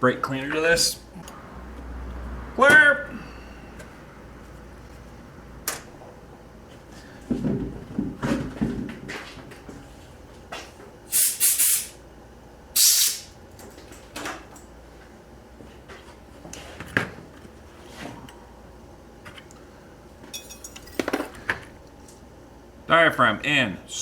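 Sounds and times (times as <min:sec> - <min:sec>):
aerosol can spraying: 0:11.1 - 0:12.0, 0:12.8 - 0:13.3.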